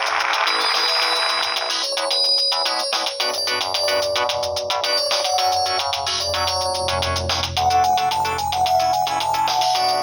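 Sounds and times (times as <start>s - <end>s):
polyphonic ringtone melody: 0.3s - 10.0s.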